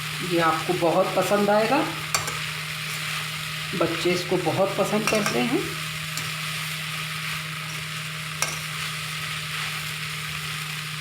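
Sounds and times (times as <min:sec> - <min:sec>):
food sizzling in a pan: 0:00.0 - 0:11.0
spoon clicking on pan: 0:02.1 - 0:02.5, 0:05.0 - 0:05.4, 0:07.7 - 0:08.8.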